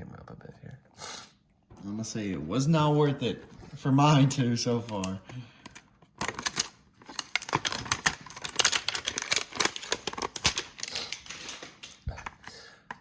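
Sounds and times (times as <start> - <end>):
plastic wrapper crinkling and tearing: 4.8 - 12.4.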